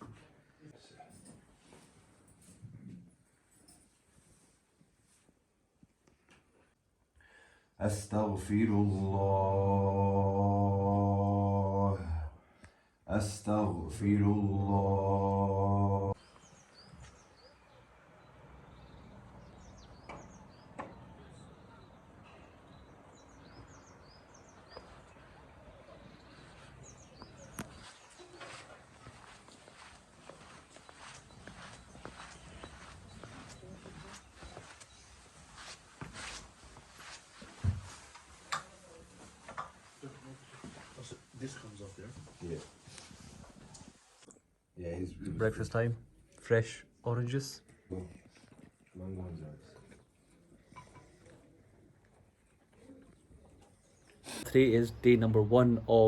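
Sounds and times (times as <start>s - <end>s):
outdoor background noise: 0.0s - 56.0s
small birds chirping: 16.2s - 35.9s, 51.0s - 56.0s.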